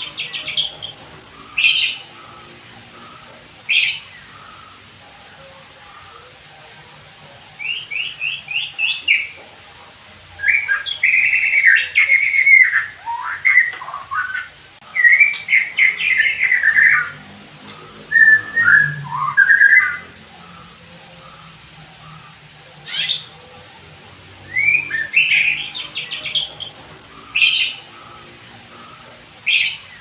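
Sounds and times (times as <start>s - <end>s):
bird whistling song: 0.0s - 2.1s, 2.9s - 4.3s, 10.4s - 17.2s, 18.1s - 20.2s, 24.4s - 27.8s, 28.7s - 30.0s.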